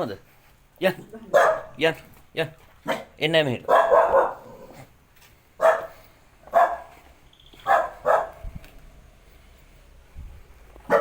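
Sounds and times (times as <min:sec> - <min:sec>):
dog barking: 0:01.3 - 0:01.8, 0:02.8 - 0:04.8, 0:05.6 - 0:07.0, 0:07.6 - 0:08.4.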